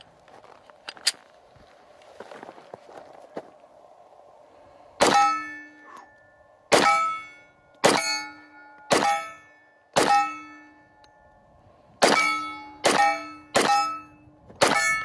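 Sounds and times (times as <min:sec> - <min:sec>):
metallic ring: 0:05.0 - 0:15.0
pistol shots: 0:07.8 - 0:08.2, 0:08.9 - 0:09.3, 0:10.0 - 0:10.5, 0:12.0 - 0:14.0.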